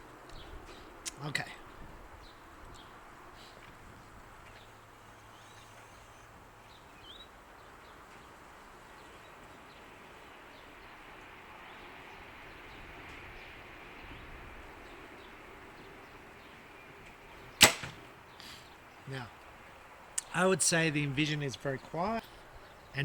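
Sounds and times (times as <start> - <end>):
faint bird chirps: 4.4 - 8.3.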